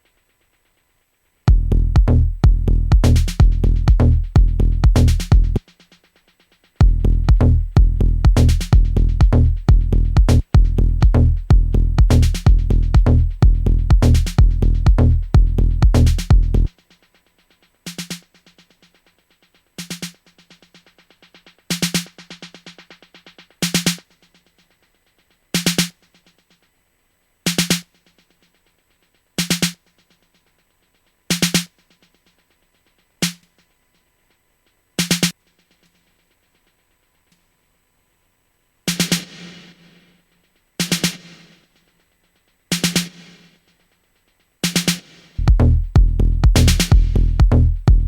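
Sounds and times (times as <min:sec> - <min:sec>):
dub techno with heavy kick and bass: 0:01.5 - 0:05.6, 0:06.7 - 0:16.7, 0:44.6 - 0:48.0.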